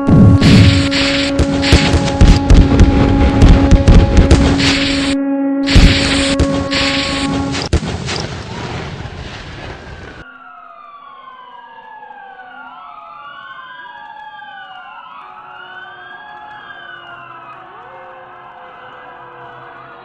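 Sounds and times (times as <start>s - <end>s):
sirens wailing: 0.0s - 7.7s, 9.6s - 20.0s
explosion bang: 0.0s - 10.1s.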